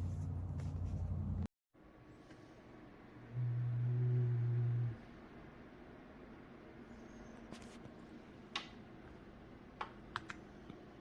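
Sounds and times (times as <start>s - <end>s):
low steady hum: 0.0s - 11.0s.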